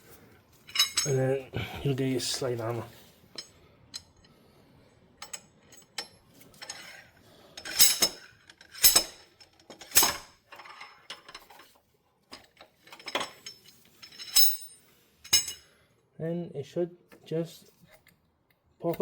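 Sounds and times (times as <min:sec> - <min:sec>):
slide hammer metallic clanks: 0:14.2 - 0:15.7.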